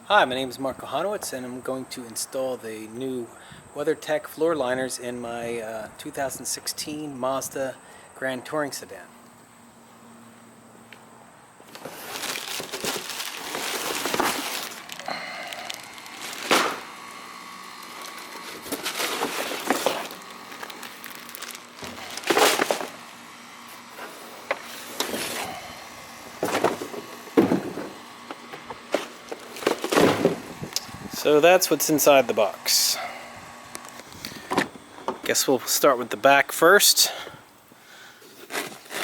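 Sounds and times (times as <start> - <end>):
cardboard and plastic rustling: 11.6 - 31.4, 38.2 - 39.0.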